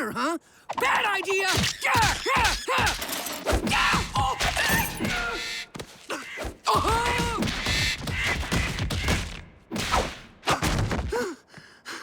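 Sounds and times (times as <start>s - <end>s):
hits and thuds: 1.6s - 11.2s
cartoon grunts and yelps: 3.6s - 5.4s, 6.1s - 7.5s
pained cry: 3.7s - 7.4s.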